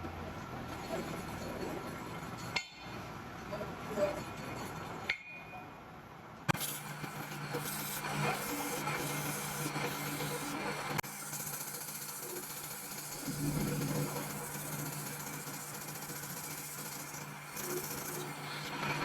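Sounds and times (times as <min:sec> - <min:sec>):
low machine hum: 0:13.1 - 0:15.7.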